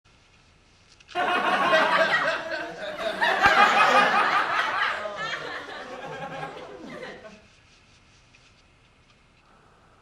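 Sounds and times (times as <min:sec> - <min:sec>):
people laughing and chattering: 0:01.2 - 0:07.4.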